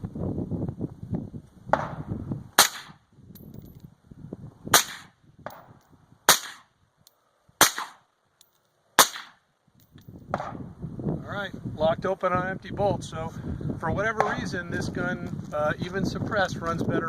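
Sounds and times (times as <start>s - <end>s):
suppressed rifle shots: 2.6s - 2.9s, 6.3s - 6.7s, 7.6s - 8.0s, 9.0s - 9.4s.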